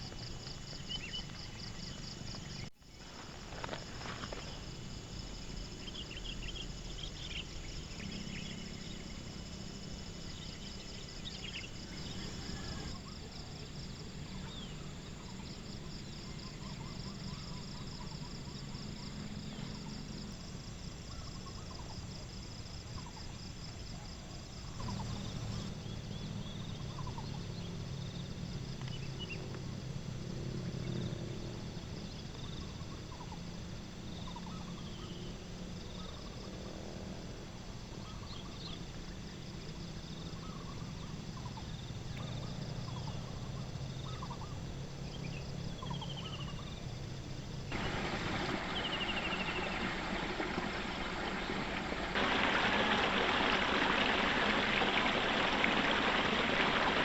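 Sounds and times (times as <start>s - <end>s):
insects trilling: 0.0s - 57.0s
bird chirps: 47.7s - 52.4s.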